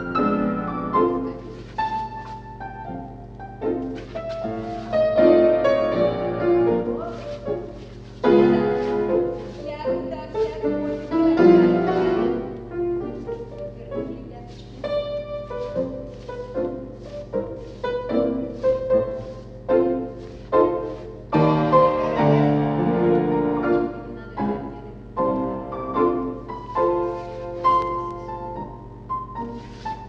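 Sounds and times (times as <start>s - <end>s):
piano music: 0.0s - 30.0s.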